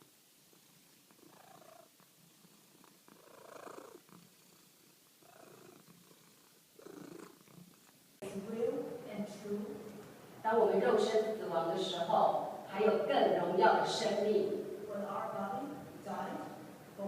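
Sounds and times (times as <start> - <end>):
cat purring: 0.0 - 8.2.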